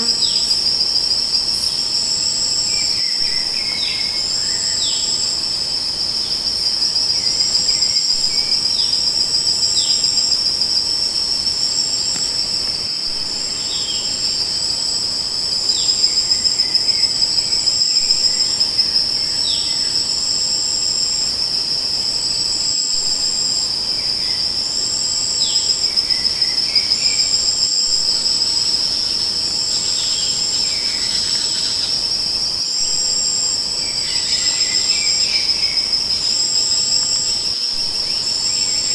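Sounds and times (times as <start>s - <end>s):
crickets trilling: 0.0s - 38.9s.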